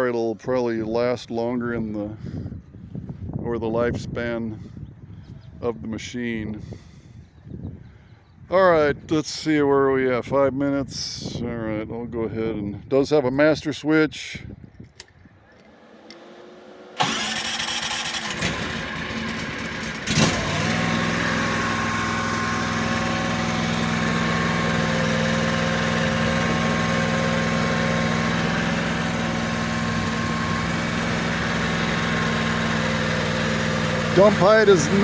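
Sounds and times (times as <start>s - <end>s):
engine cranking on starter: 15.6s - 35.0s
gas engine running: 15.6s - 35.0s.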